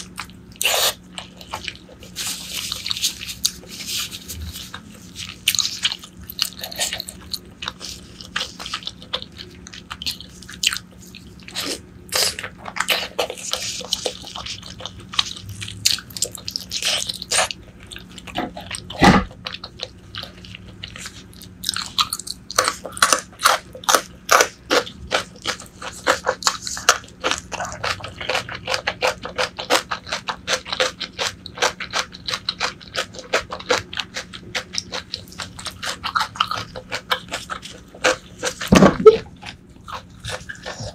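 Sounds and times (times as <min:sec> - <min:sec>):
close-miked chewing and biting: 0:00.0 - 0:40.9
loud thump: 0:38.7 - 0:39.2.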